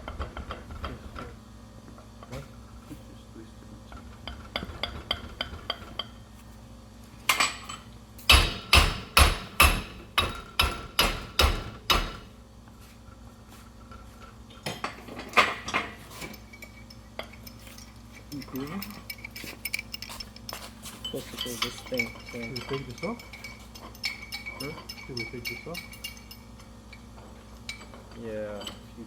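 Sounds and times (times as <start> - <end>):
hammer striking steel: 8.3 - 12.3.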